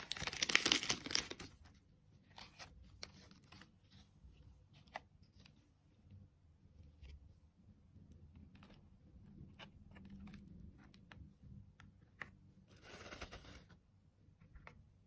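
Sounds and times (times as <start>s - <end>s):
packaging rustle: 0.0s - 1.6s.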